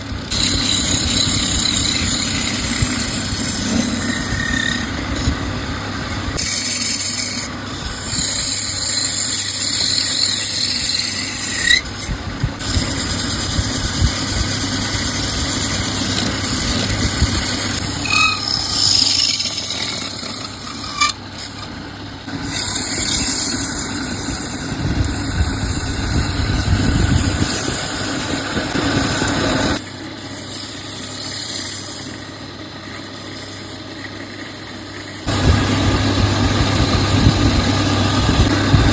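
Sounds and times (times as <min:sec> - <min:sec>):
tool scraping spinning wood: 0:00.0 - 0:38.9
wood lathe motor hum: 0:00.0 - 0:38.9
squeals: 0:00.3 - 0:05.4, 0:06.3 - 0:14.3, 0:15.0 - 0:21.8.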